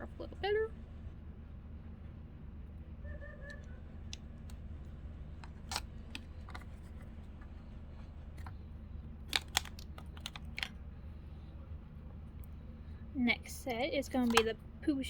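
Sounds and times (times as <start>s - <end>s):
steady low hum: 0.0s - 15.0s
clicks of handling pins: 5.4s - 8.6s, 9.3s - 10.8s, 13.6s - 14.6s.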